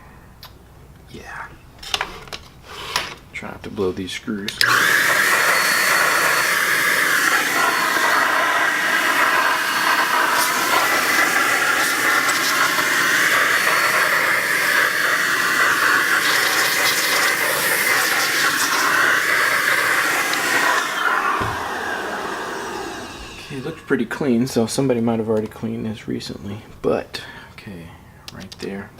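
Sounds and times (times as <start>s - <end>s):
air duster hissing: 2.6s - 3.2s, 4.6s - 24.0s.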